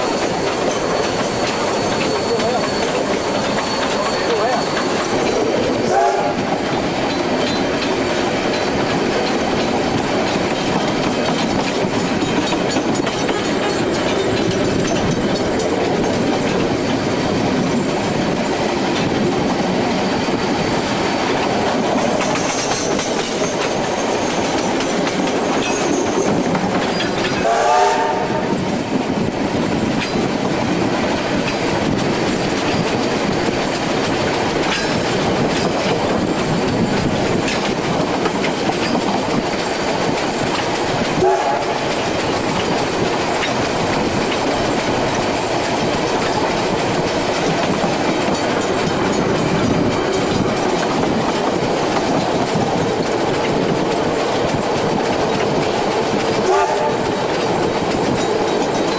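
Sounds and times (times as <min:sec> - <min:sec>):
train wheels clattering over rails: 0:00.0 - 0:58.9.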